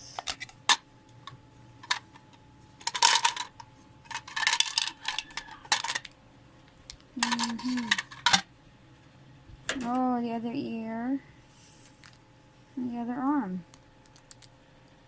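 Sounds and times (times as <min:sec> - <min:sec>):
plastic toy parts clattering: 0:01.8 - 0:02.1, 0:02.8 - 0:06.1, 0:07.2 - 0:08.4.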